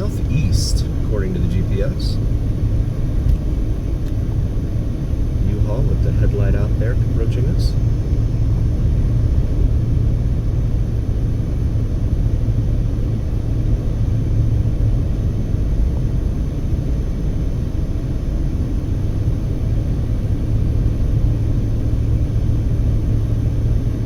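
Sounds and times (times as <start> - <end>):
car driving rumble: 0.0 - 16.9.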